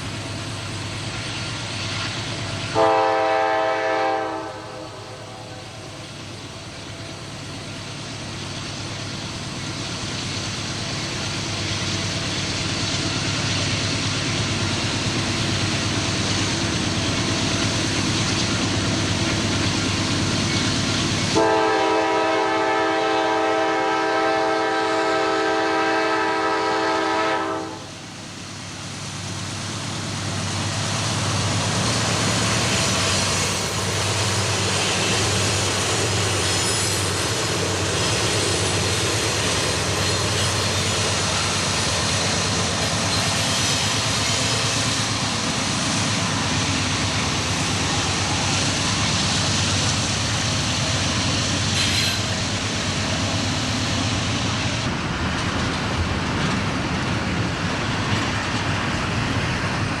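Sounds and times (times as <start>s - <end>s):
train wheels on rails: 0.0s - 60.0s
locomotive air horn: 2.7s - 6.0s, 21.4s - 28.0s
locomotive engine drone: 25.5s - 60.0s.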